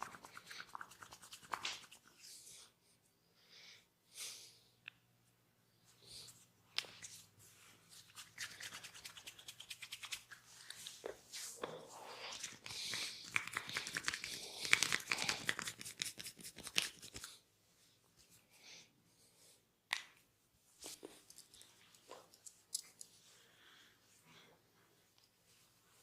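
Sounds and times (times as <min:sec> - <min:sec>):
hands scratching and rubbing skin: 0:00.0 - 0:02.4, 0:06.3 - 0:17.4.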